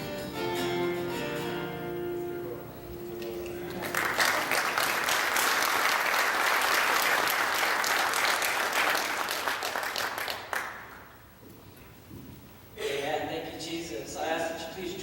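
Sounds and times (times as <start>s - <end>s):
congregation applauding: 3.7s - 11.1s.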